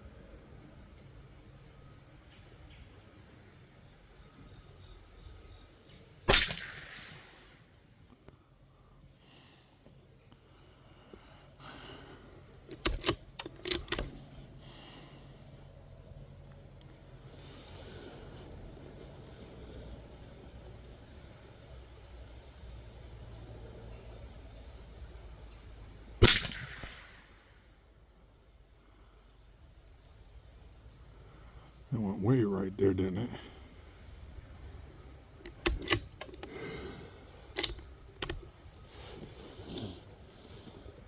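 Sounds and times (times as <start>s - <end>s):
insects droning: 0.0s - 41.0s
rifle shot: 6.3s - 7.6s, 26.2s - 27.5s
rifle handling clicks: 12.7s - 14.3s, 26.2s - 27.1s, 35.4s - 38.6s.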